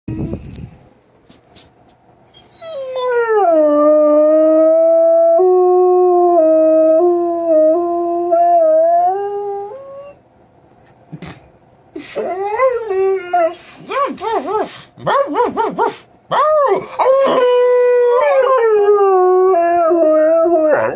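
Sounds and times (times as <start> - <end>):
dog howling: 12.2 - 20.9.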